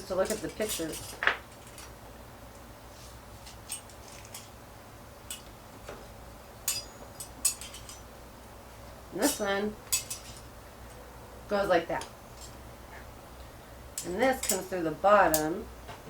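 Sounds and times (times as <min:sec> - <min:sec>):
small metal parts clicking: 0:00.0 - 0:02.0, 0:03.4 - 0:04.6, 0:05.3 - 0:05.5, 0:06.6 - 0:08.1, 0:09.2 - 0:11.0, 0:12.4 - 0:12.6, 0:14.0 - 0:15.5
faint steady hum: 0:00.0 - 0:16.0.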